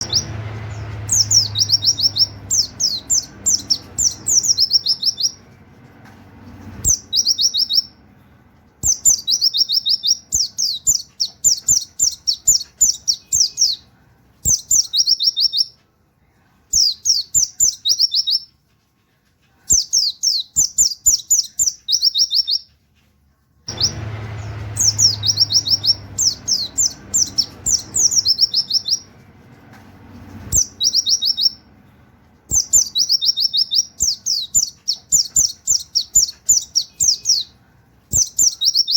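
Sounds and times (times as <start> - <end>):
bird singing rapid high notes: 0.0 - 5.6, 6.8 - 8.0, 8.8 - 15.8, 16.7 - 18.5, 19.7 - 22.7, 23.7 - 29.3, 30.3 - 31.8, 32.5 - 38.9
low hum: 23.7 - 31.0.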